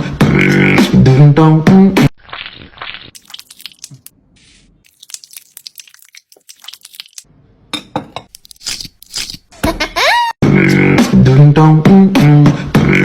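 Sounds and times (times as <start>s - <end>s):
food preparation crunches and clicks: 2.8s - 4.1s, 4.9s - 7.3s, 8.3s - 9.5s.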